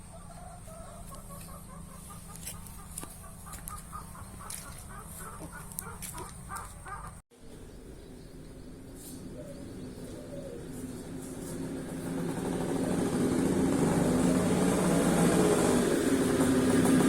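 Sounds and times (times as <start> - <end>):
engine running: 0.0 - 7.2, 8.4 - 17.0.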